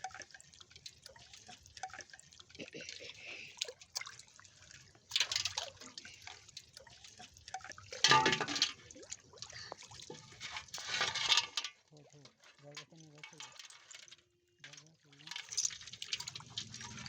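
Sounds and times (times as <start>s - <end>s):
water splashing and dripping: 0.0s - 17.0s.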